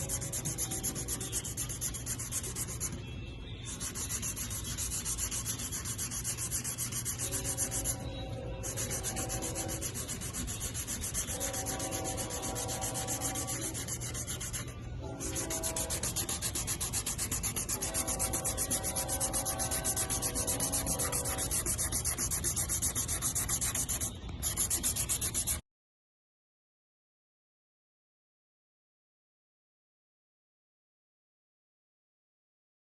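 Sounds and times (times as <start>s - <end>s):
hand sanding with sandpaper: 0.0s - 3.0s, 3.7s - 25.6s.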